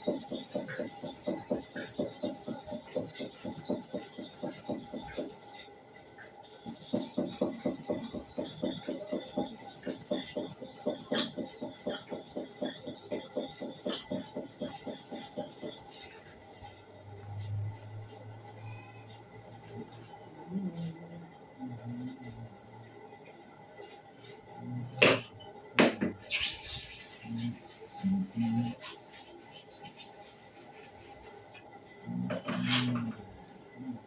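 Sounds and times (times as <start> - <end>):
blade rubbing on abrasive surface: 0.0 - 5.7, 6.5 - 18.6, 26.2 - 33.2.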